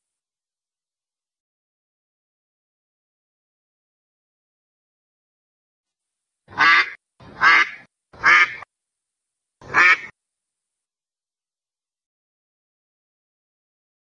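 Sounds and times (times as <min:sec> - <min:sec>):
duck quacking: 0:06.5 - 0:08.7, 0:09.6 - 0:10.2.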